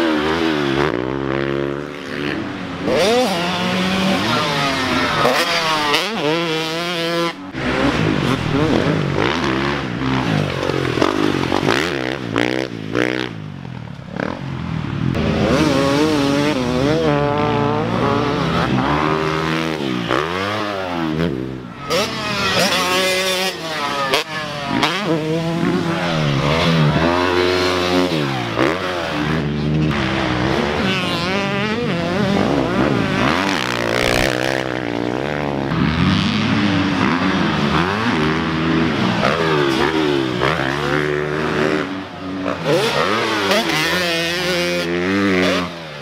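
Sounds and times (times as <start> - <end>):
dirt bike engines revving: 0.0 - 46.0.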